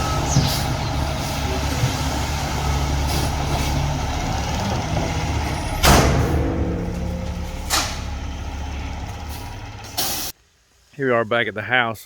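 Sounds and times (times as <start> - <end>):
dump truck engine running: 0.0 - 10.3
brake air hissing: 9.2 - 10.4.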